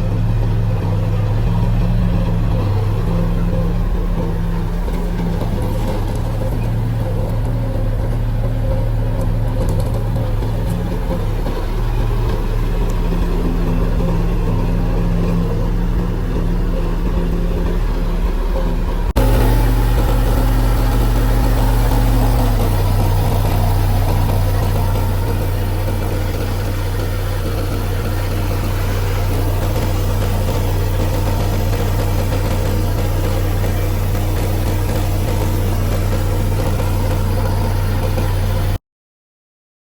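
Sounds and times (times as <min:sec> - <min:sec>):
diesel engine running: 0:00.0 - 0:38.8.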